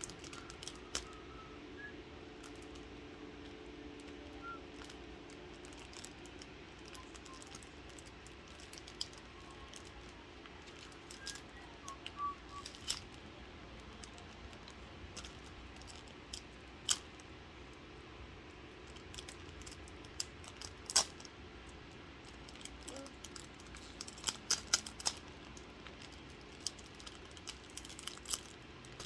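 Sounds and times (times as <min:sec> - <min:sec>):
card packs clicking and tapping: 0:00.0 - 0:01.2, 0:02.4 - 0:17.1, 0:22.3 - 0:29.0
faint steady hum: 0:00.0 - 0:29.0.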